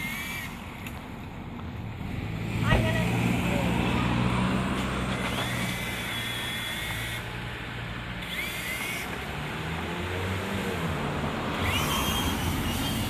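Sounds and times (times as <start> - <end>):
small electric motor whining: 0.0 - 0.9, 5.1 - 7.5, 8.1 - 9.6, 11.5 - 13.0
rotor hum: 0.0 - 13.0.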